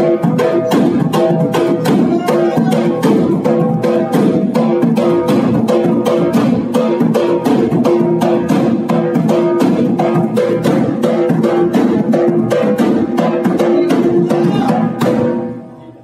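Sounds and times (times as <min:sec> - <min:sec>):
fast percussive beat: 0:00.0 - 0:15.6.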